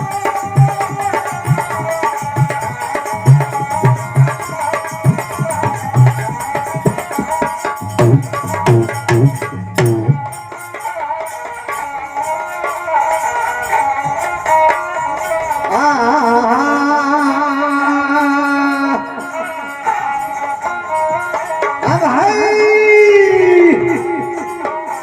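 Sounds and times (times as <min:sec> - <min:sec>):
hand drum rhythm: 0:00.0 - 0:11.8.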